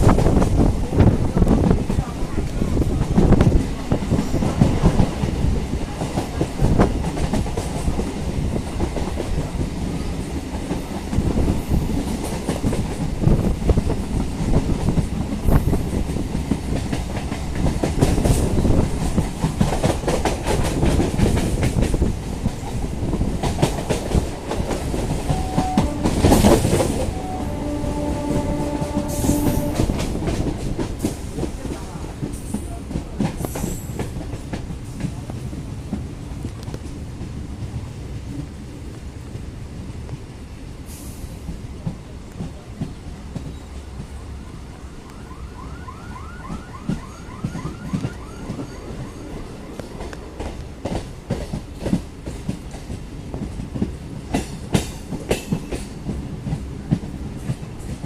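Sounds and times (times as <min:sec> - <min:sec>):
train wheels clacking on rails: 0:00.0 - 0:38.6, 0:46.5 - 0:58.0
train rumble: 0:00.0 - 0:58.0
train horn: 0:25.1 - 0:30.4.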